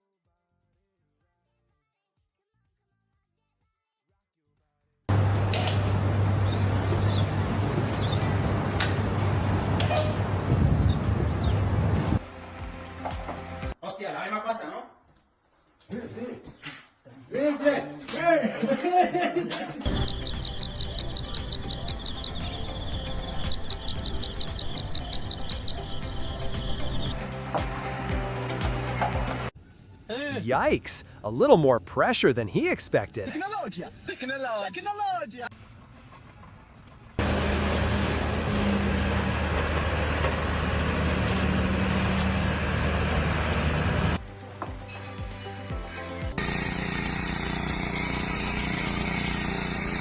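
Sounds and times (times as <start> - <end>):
rapid high-pitched chirping: 19.9 - 27.2
machine running with rushing noise: 46.4 - 50.0.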